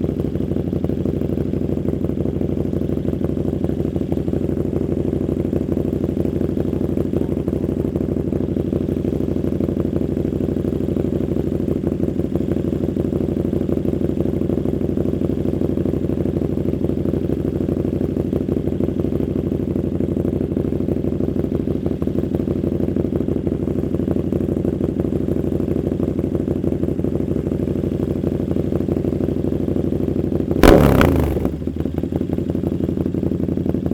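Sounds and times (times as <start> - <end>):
motorcycle engine idling: 0.0 - 33.9
motorcycle throttle blip: 30.6 - 32.2.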